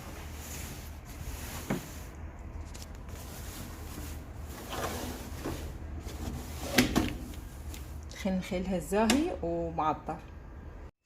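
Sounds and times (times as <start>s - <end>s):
fabric rustling: 0.0s - 8.0s.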